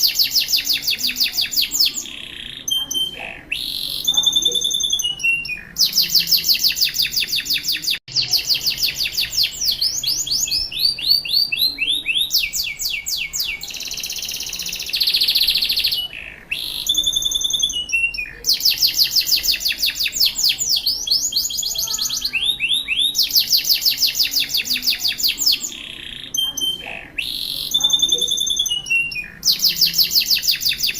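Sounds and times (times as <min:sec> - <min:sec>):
canary singing trills: 0:00.0 - 0:30.9.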